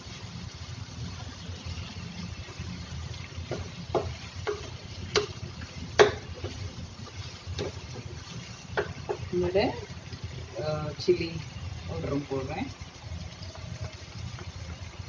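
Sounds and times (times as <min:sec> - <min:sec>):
spoon knocking and scraping a pan: 0:03.3 - 0:09.6.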